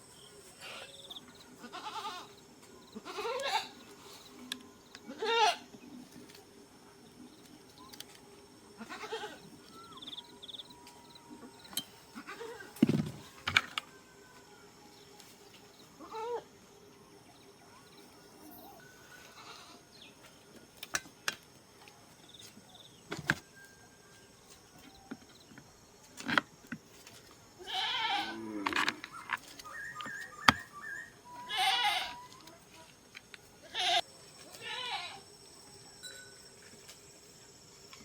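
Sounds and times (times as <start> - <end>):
goats bleating: 1.6 - 2.3, 27.6 - 28.6, 31.5 - 32.2.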